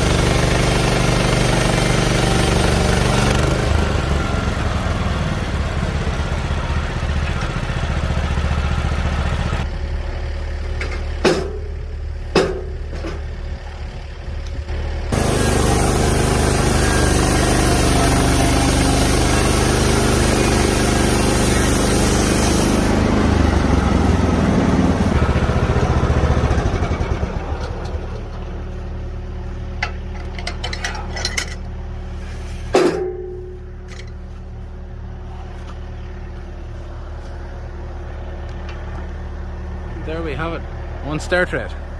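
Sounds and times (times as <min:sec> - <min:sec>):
sawmill engine running: 0:00.0 - 0:41.9
sharp knocks: 0:11.2 - 0:13.2
saw blade cutting timber: 0:15.1 - 0:23.1.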